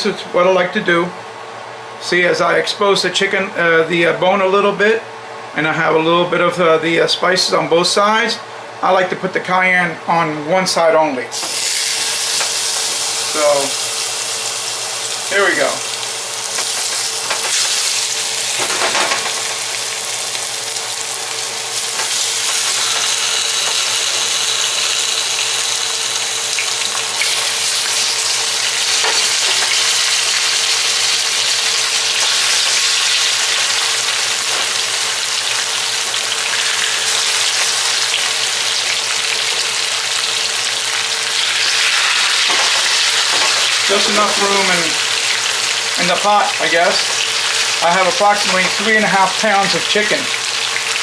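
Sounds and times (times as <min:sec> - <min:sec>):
chicken sizzling in hot fat: 0:11.3 - 0:51.0.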